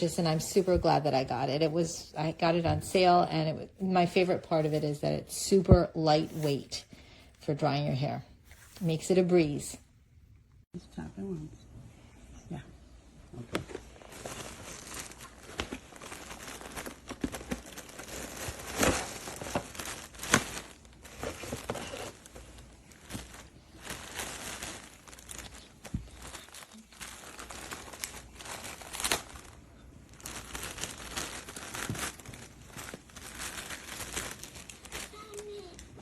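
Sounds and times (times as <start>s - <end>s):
rustling and crinkling: 13.3s - 36.0s.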